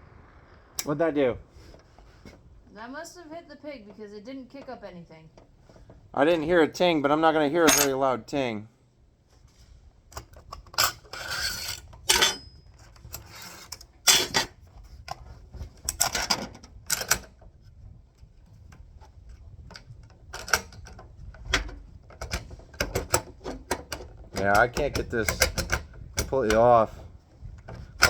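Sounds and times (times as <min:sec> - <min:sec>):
short metal scrapes: 0:10.8 - 0:12.5.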